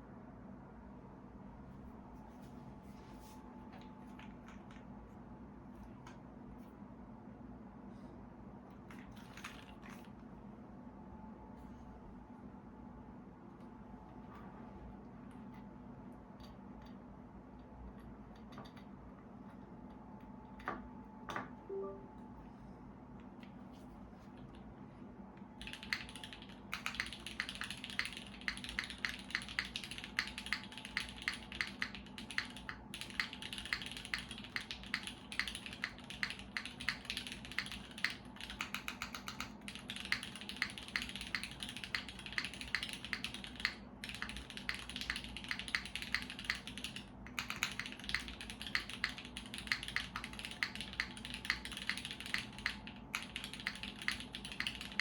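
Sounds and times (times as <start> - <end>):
fast typing on mechanical keyboard: 8.9 - 10.1, 25.5 - 55.0.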